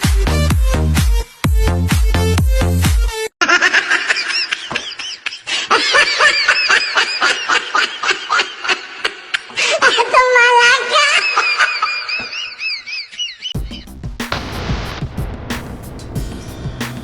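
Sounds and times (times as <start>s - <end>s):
high-pitched cackling laughter: 3.4s - 13.6s.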